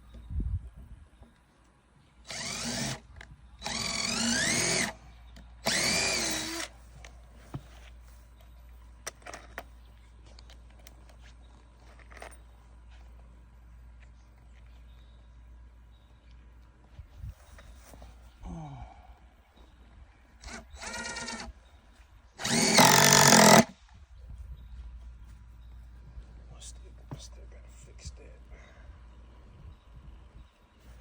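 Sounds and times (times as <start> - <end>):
drill driving screws into wood: 2.2 - 5.0, 5.6 - 6.8, 20.4 - 21.6, 22.4 - 23.8.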